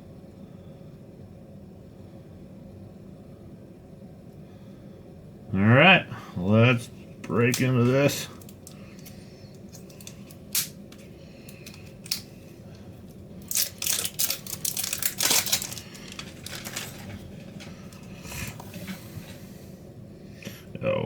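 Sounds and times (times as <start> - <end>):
packaging torn and crinkled: 13.4 - 17.1.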